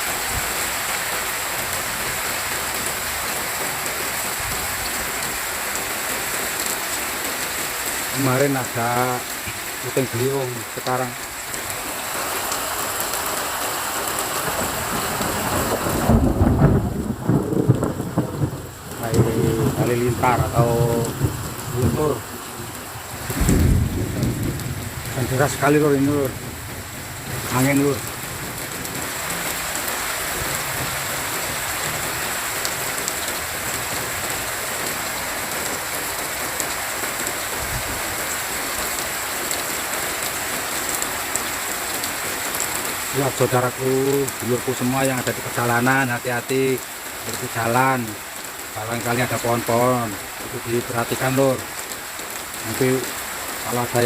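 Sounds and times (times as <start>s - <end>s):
heavy rain hissing: 0.0s - 54.0s
thunder rumbling: 14.4s - 32.9s.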